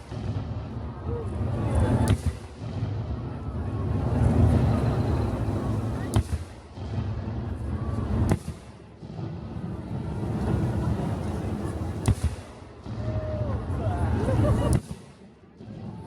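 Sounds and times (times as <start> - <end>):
fireworks sharp cracks: 0.0 - 15.9
fireworks booming rumble: 0.0 - 16.0.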